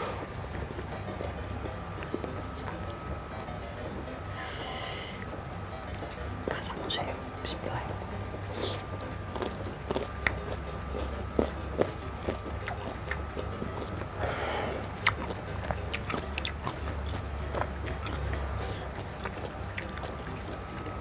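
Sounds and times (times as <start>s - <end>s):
biting and chewing food: 0.0s - 6.3s, 8.2s - 21.0s
steady low hum: 0.0s - 21.0s
mouth clicks and smacks: 14.8s - 20.6s.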